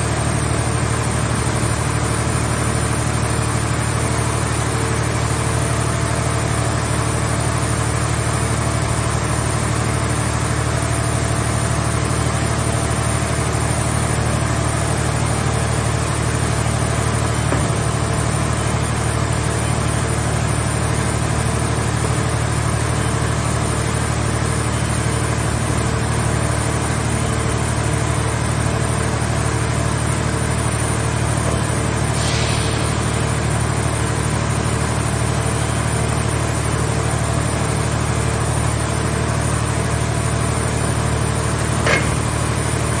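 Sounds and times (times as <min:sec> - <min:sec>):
baling press engine drone: 0:13.7 - 0:20.6, 0:41.0 - 0:43.0
brief hiss: 0:32.2 - 0:33.0
sharp click: 0:41.8 - 0:42.4.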